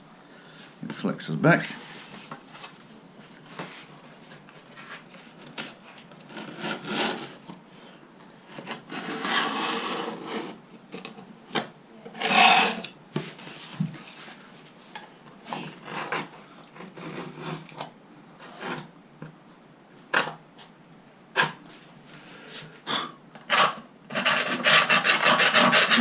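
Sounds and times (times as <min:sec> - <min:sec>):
screwdriver scraping: 0:12.2 - 0:12.9.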